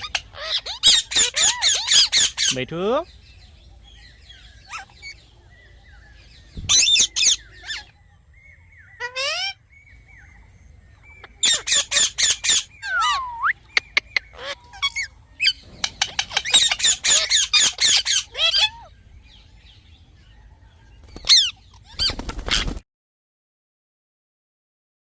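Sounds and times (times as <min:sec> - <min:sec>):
parrot screeching: 0:00.0 - 0:02.6, 0:04.6 - 0:05.2, 0:09.0 - 0:09.6, 0:11.4 - 0:13.5, 0:14.3 - 0:18.9.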